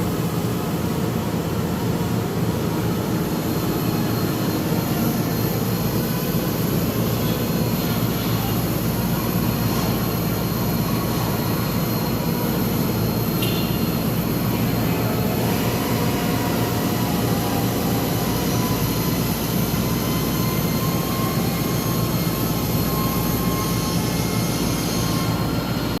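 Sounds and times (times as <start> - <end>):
machine low drone: 0.0 - 26.0.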